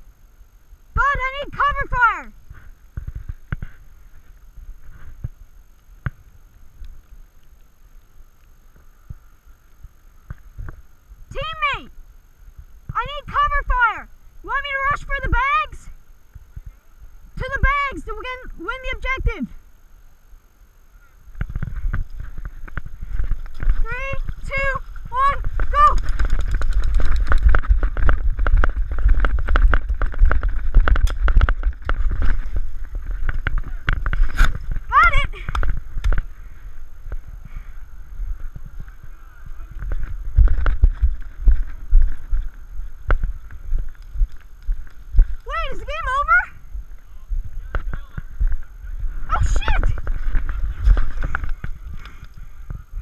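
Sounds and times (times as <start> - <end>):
low steady rumble: 0.0 - 53.0
heavy wind on microphone: 20.9 - 53.0
running footsteps: 21.3 - 53.0.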